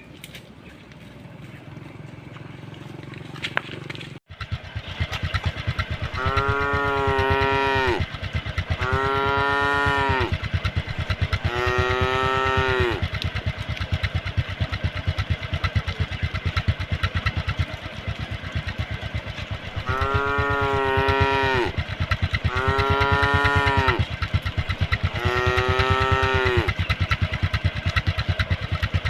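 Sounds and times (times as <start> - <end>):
motorcycle engine running: 0.0 - 29.0
cow mooing: 6.0 - 13.2, 19.6 - 26.8.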